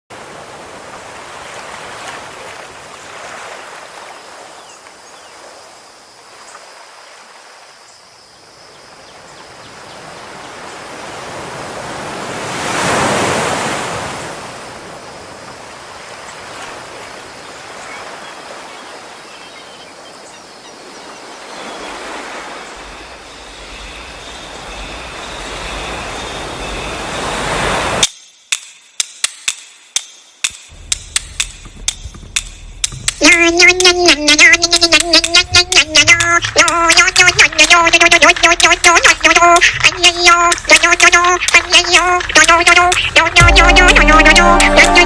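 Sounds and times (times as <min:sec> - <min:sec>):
ocean waves washing: 0:00.1 - 0:05.5, 0:09.2 - 0:28.0, 0:30.7 - 0:45.0
large wave breaking: 0:10.4 - 0:19.0, 0:21.3 - 0:28.0.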